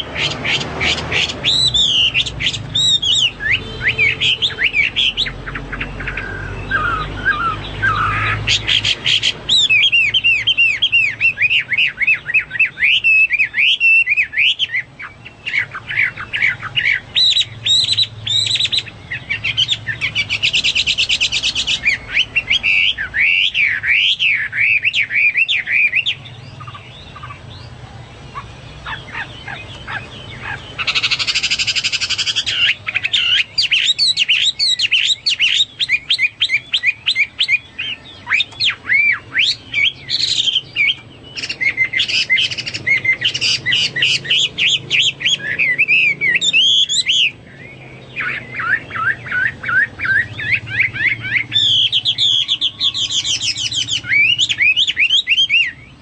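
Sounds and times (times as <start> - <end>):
bird singing whistled phrases: 0.0 - 27.7, 28.3 - 56.0
bird harsh buzzy chattering: 28.3 - 37.6.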